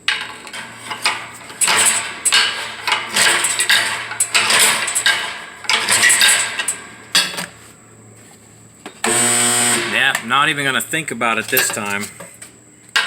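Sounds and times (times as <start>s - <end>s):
pry bar clanking on metal: 0.0s - 7.6s, 11.4s - 12.3s.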